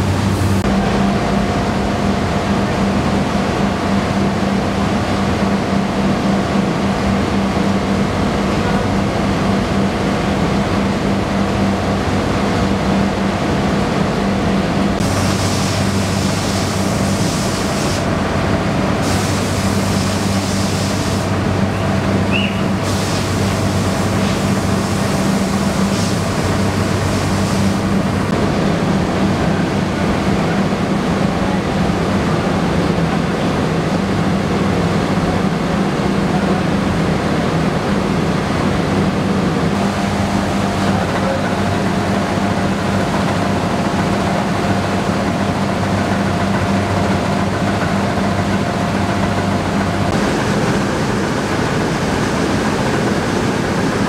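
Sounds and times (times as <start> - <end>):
rice mill machinery rushing noise: 0.0 - 54.0.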